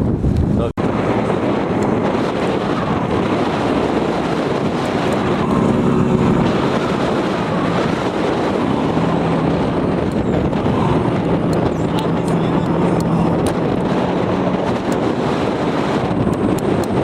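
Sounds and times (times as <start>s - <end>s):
boat engine running: 0.0s - 17.0s
wind noise on microphone: 0.0s - 17.0s.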